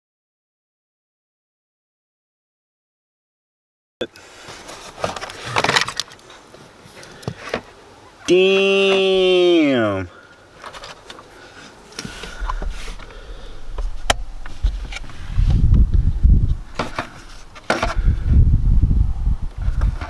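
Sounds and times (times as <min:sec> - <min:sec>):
microphone handling clicks and knocks: 0:04.1 - 0:06.4, 0:11.9 - 0:18.6, 0:19.5 - 0:20.0
wind buffeting microphone: 0:12.3 - 0:20.0.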